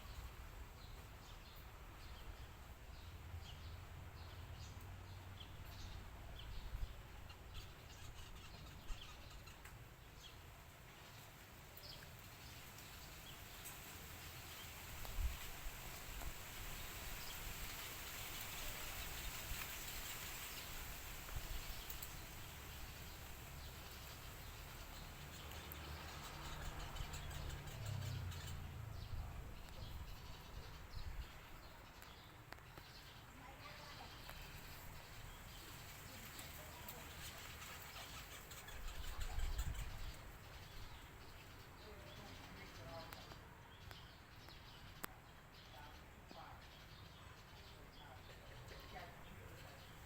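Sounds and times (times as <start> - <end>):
faint outdoor hiss: 0.0 - 50.0
faint bird chirps: 5.4 - 10.4, 18.3 - 50.0.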